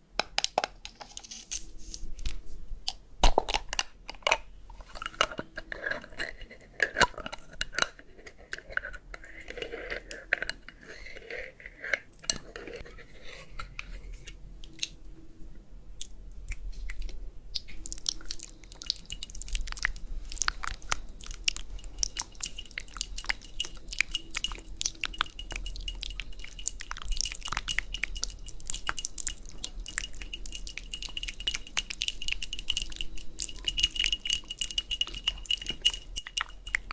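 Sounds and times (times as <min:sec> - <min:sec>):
chewing crunchy food: 0:16.0 - 0:36.9
faint steady high tone: 0:20.7 - 0:36.9.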